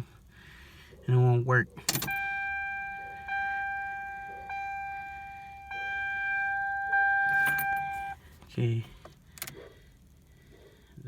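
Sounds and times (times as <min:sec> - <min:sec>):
car warning chime: 0:01.9 - 0:08.2.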